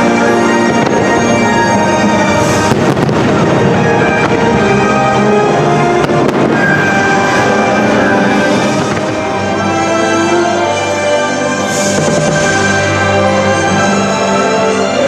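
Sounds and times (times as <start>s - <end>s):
fireworks bursting: 0.0s - 14.2s
orchestral music over speakers: 0.0s - 15.0s
sharp bangs: 0.5s - 10.4s.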